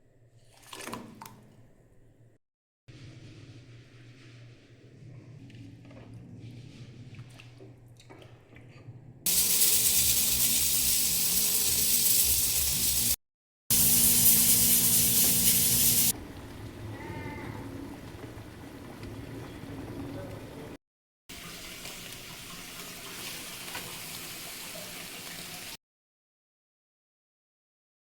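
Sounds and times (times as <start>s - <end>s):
water running from a tap: 9.3s - 25.8s.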